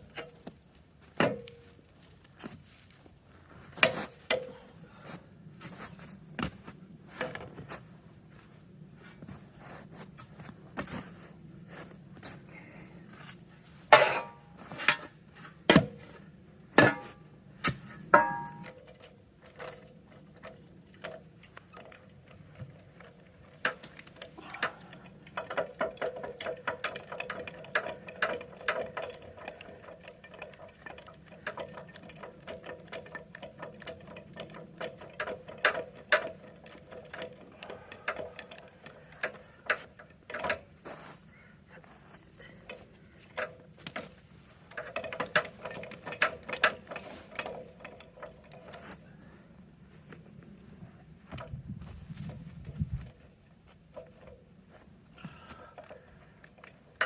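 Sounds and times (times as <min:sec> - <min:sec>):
sharp metallic knocks: 0:16.8 - 0:18.8
rapid mechanical clicking: 0:18.9 - 0:40.6.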